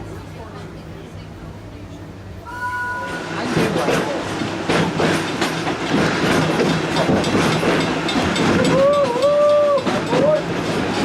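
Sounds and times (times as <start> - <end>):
wavering train whistle: 2.5 - 3.2
train cars rattling on track: 2.8 - 11.0.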